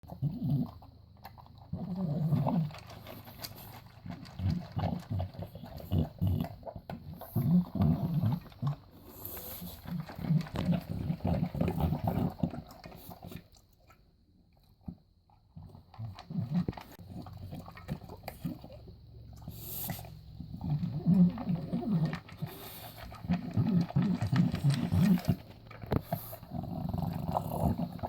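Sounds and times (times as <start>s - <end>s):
dog snorting and grunting: 0.0s - 13.4s, 19.4s - 28.0s
dog eating dry kibble: 0.0s - 28.0s.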